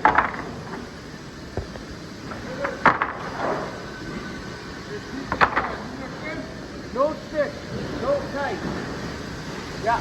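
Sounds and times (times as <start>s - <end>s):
conveyor chain mechanical rumble: 3.7s - 10.0s.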